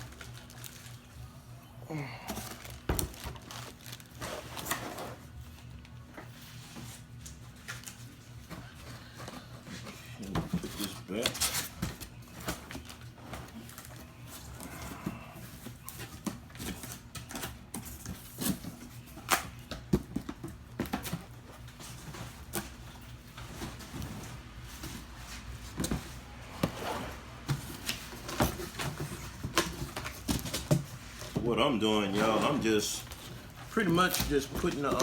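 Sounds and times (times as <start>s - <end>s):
cardboard boxes knocking and scraping: 8.4s - 35.0s.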